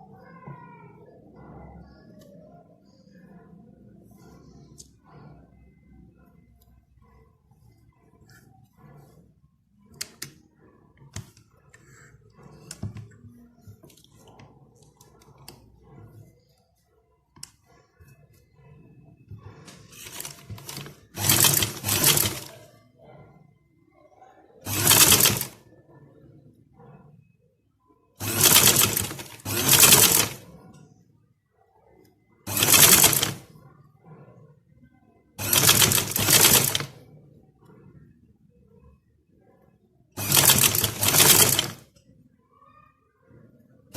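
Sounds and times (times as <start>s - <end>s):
sewing machine stitching: 19.7s - 22.6s, 24.7s - 25.6s, 28.2s - 30.5s, 32.5s - 33.5s, 35.4s - 37.0s, 40.2s - 41.8s.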